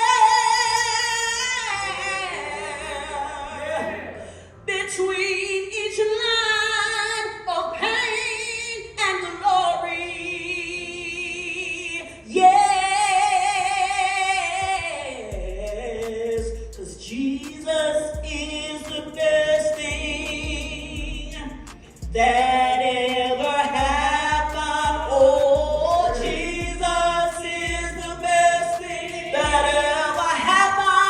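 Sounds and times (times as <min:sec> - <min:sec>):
gospel singing with vibrato: 0:00.0 - 0:31.0
low bass notes: 0:15.3 - 0:17.0, 0:18.2 - 0:18.6, 0:19.9 - 0:22.7, 0:23.8 - 0:28.4, 0:29.4 - 0:30.0.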